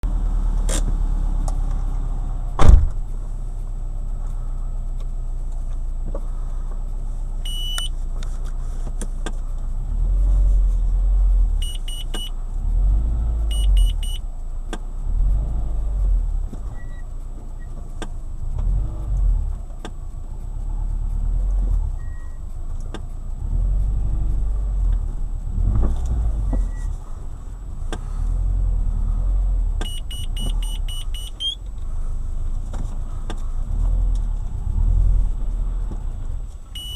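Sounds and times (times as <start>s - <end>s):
low rumble of road and engine: 0.0s - 36.9s
low thuds: 0.9s - 3.4s, 21.2s - 36.9s
short electronic beeps: 7.4s - 8.0s, 11.6s - 12.4s, 13.5s - 14.2s, 29.8s - 31.6s.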